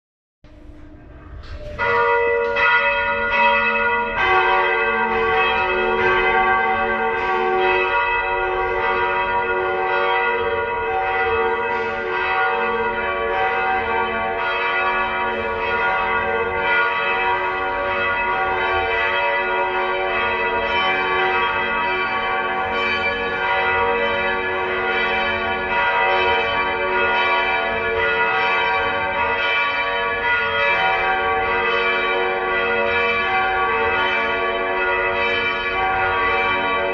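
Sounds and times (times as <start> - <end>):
church bells ringing: 0.5 - 36.9.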